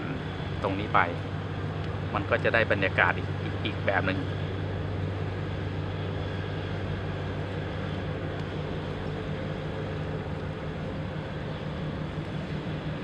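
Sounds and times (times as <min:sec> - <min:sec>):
low engine drone: 0:00.0 - 0:13.0.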